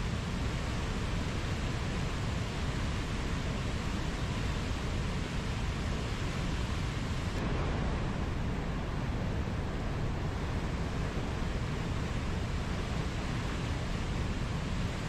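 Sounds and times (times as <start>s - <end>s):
outdoor nature ambience rushing: 0.0s - 15.0s.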